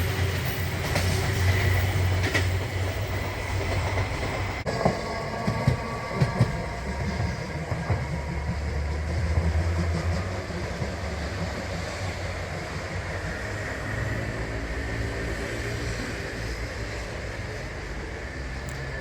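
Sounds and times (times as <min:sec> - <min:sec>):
wheels clacking over rails: 0:00.0 - 0:13.7
train low rumble: 0:00.0 - 0:19.0.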